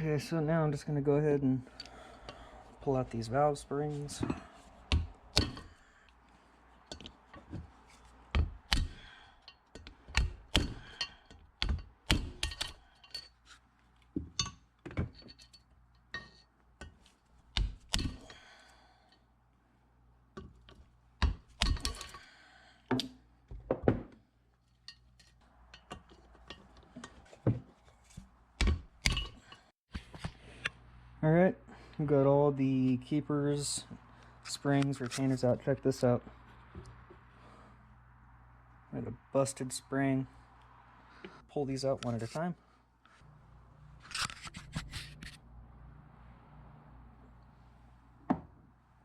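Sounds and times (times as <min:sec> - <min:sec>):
metal parts clinking and knocking: 0:08.7 - 0:13.6.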